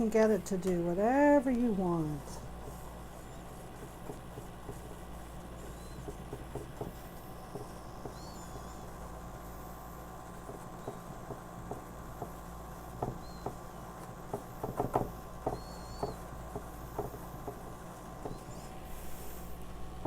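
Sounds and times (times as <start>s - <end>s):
low electrical hum: 0.0s - 20.0s
hand tools tapping on canvas: 5.6s - 8.3s, 14.3s - 18.4s.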